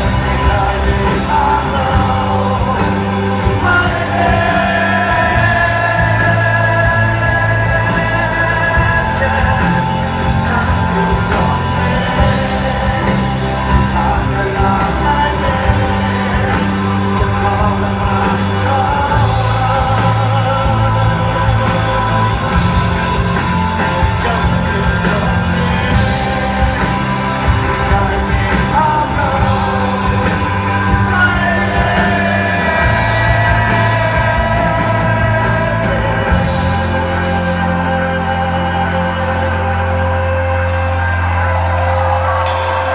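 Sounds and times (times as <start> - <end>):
rock music with singing: 0.0 - 42.9.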